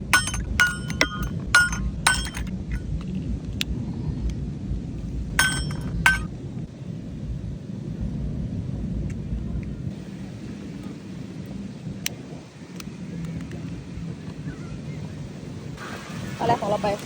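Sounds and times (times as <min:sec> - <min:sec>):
kitchenware clinking: 0:00.0 - 0:02.8, 0:05.4 - 0:06.3
low rumble of storm wind: 0:00.0 - 0:17.0.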